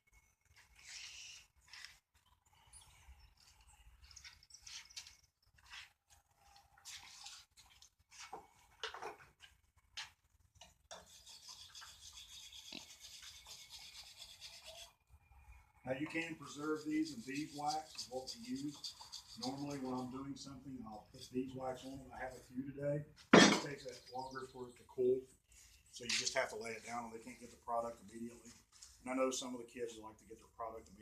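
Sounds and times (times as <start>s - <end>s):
wire brush scrubbing steel: 10.9s - 15.0s, 15.9s - 22.4s.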